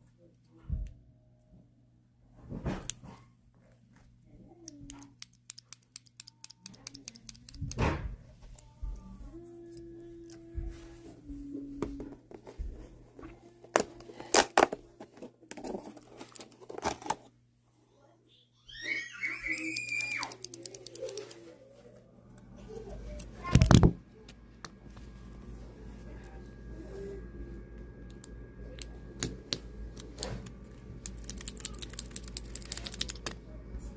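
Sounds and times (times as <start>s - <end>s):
sharp clicks and snaps: 4.6s - 7.8s, 31.0s - 33.4s
paper packaging tearing and crinkling: 31.1s - 33.3s.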